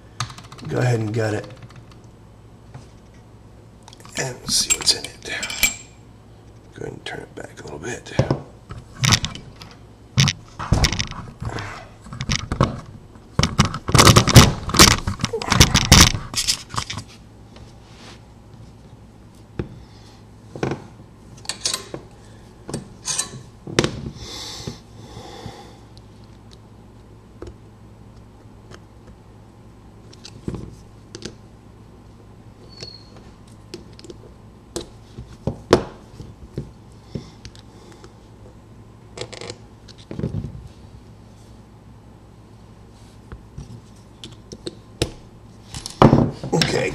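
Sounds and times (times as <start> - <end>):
metal tools clicking and scraping: 4.5 - 6.0, 21.4 - 22.0, 23.0 - 23.5.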